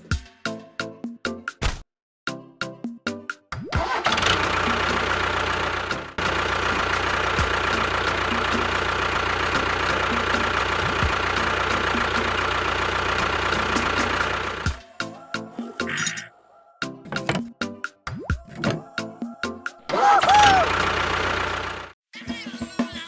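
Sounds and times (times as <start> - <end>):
engine running with knocking tick: 3.8 - 14.8, 20.3 - 22.0.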